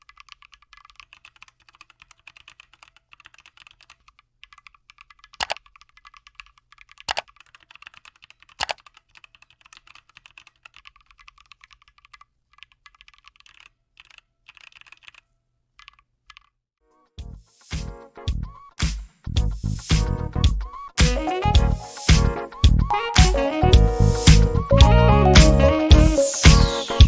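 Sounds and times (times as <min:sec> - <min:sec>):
mechanical keyboard typing: 0:00.0 - 0:16.6.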